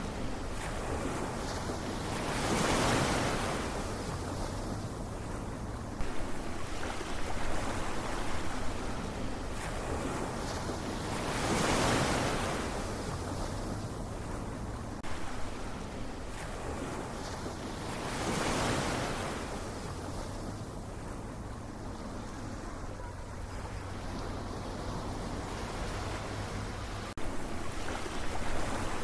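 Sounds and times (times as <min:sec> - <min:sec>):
low rumble of surf: 0:00.0 - 0:29.0
ocean waves breaking: 0:00.0 - 0:29.0.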